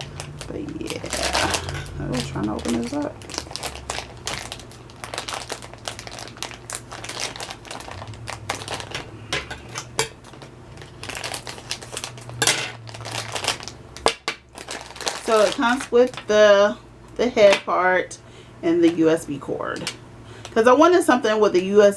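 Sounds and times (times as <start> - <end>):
plastic packaging crinkling: 0.0 - 16.3.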